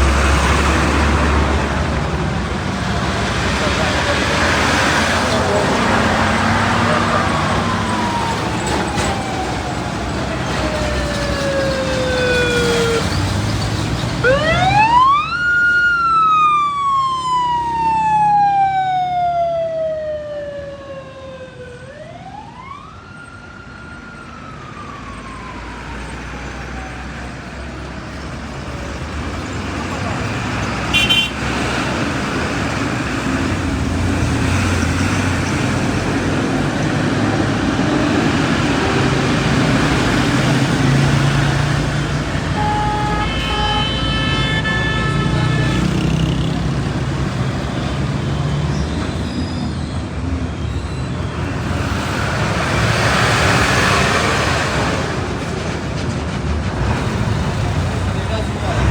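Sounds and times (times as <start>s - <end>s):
road traffic noise: 0.0s - 58.9s
siren wailing: 5.7s - 27.4s, 36.2s - 49.2s.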